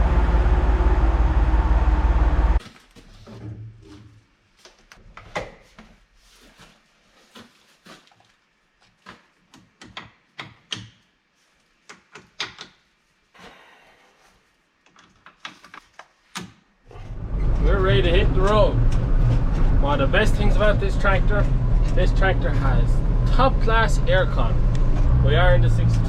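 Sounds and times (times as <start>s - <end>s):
tractor engine running: 0.0s - 2.6s, 16.9s - 26.0s
sharp clicks and knocks: 9.1s - 11.0s.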